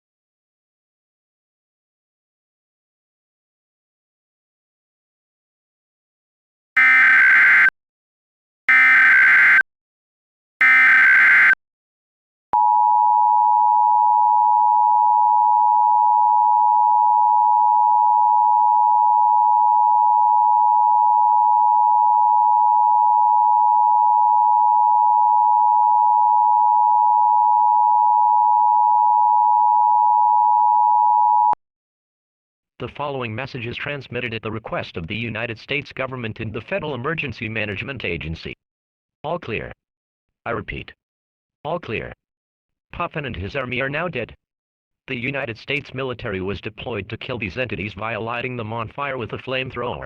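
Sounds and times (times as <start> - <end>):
digital data bursts: 6.8 - 7.7, 8.7 - 9.6, 10.6 - 11.6
two-tone attention signal: 6.8 - 7.7, 8.7 - 9.6, 10.6 - 11.6.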